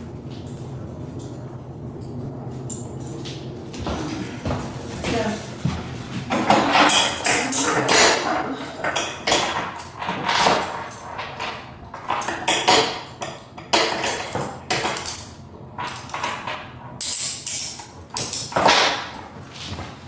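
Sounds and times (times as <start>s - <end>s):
handling noise: 0.0s - 20.0s
metallic clinks and rattles: 6.3s - 19.3s.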